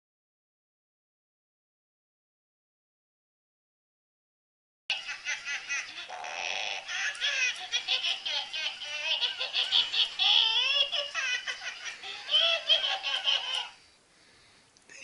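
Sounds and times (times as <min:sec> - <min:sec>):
baby laughing and squealing: 0:04.9 - 0:13.8.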